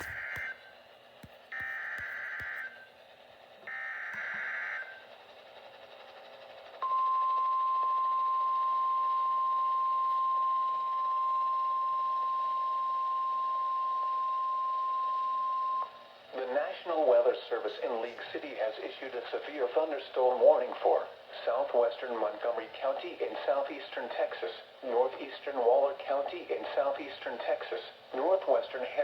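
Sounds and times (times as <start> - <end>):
steady loud warning tone: 3.7 - 5.0.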